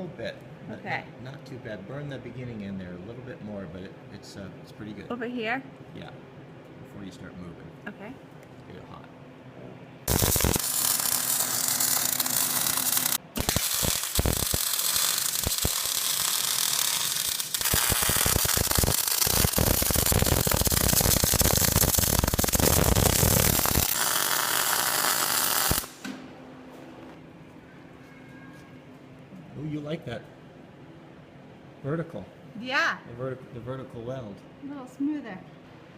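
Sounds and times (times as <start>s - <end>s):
electric arc welding crackling: 10.1s - 26.1s.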